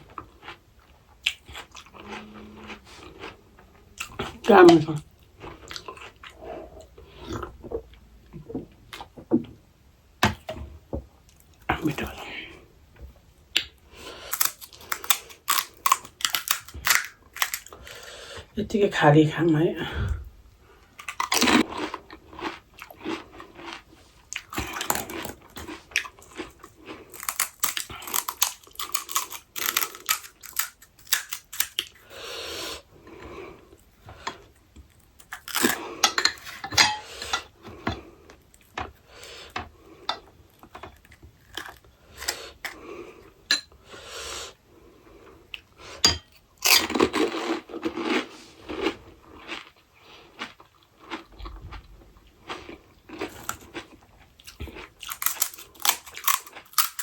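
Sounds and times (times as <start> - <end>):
person crunching crisp food: 1.2 - 3.4, 14.0 - 18.1, 21.0 - 32.0, 34.9 - 36.6, 41.0 - 42.8, 46.6 - 57.0.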